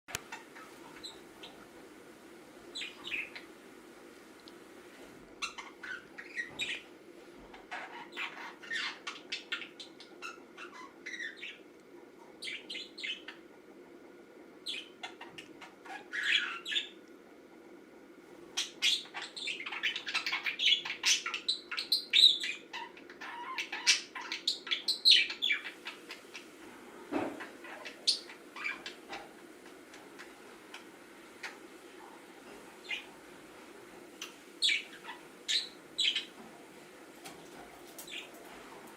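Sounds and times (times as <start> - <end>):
steady low hum: 0.1 - 38.9
budgerigar chirping and chattering: 7.7 - 11.6, 14.7 - 17.0, 18.6 - 26.4.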